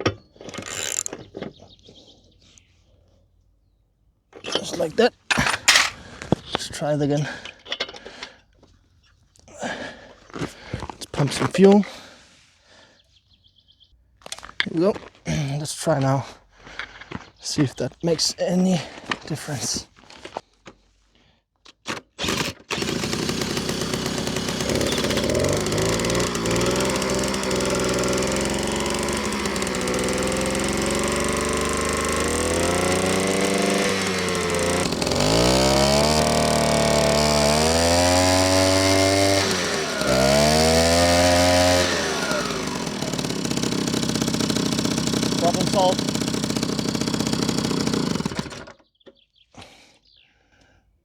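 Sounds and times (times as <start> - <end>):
starter clicks: 0.4 - 1.3, 5.3 - 6.0, 21.8 - 48.8
two-stroke moped engine revving: 0.6 - 1.1, 22.3 - 48.7.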